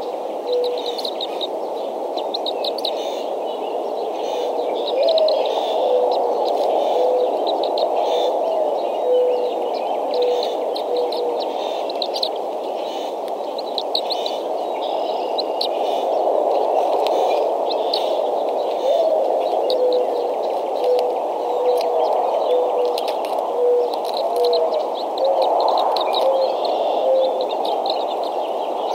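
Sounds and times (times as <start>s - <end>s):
low whistled bird call: 0.5s - 1.1s.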